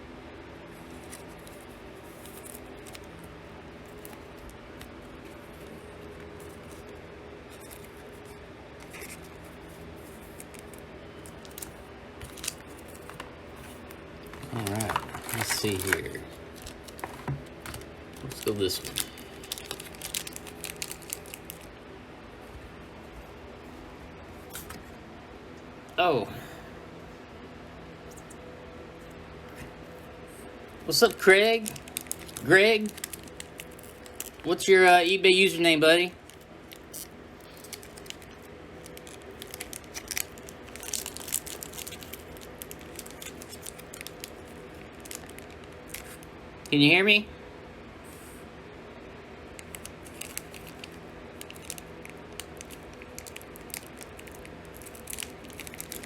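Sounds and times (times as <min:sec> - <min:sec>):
faint steady hum: 0:00.0 - 0:56.0
wrapper crinkling and tearing: 0:00.8 - 0:21.7, 0:30.8 - 0:34.7, 0:36.1 - 0:46.3, 0:49.6 - 0:56.0.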